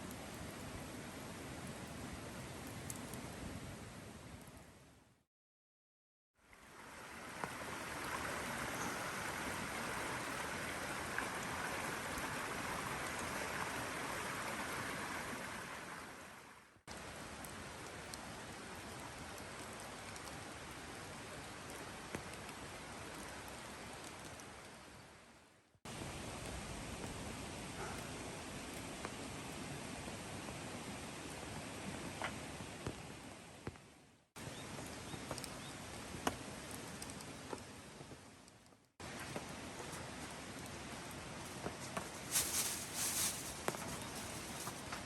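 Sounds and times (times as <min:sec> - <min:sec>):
rain hiss: 0:06.4 - 0:25.2, 0:25.9 - 0:33.6, 0:39.0 - 0:45.0.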